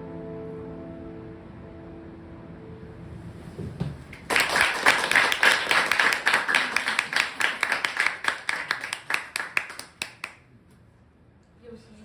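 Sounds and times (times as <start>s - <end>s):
audience clapping: 4.1s - 10.4s.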